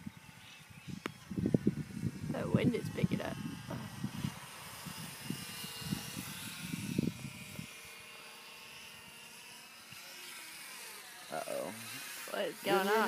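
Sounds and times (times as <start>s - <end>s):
wind buffeting microphone: 0.0s - 8.1s
model plane electric motor buzz: 0.0s - 13.0s.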